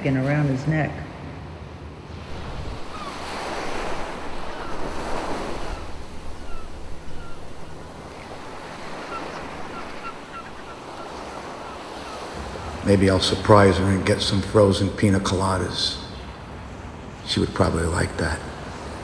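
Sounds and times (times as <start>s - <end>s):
wind on the microphone: 2.1s - 11.1s
surf washing on a beach: 2.1s - 19.0s.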